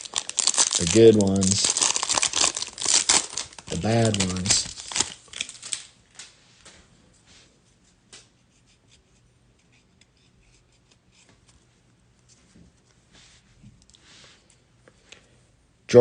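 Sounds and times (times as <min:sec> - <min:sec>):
low steady hum: 0:00.0 - 0:16.0.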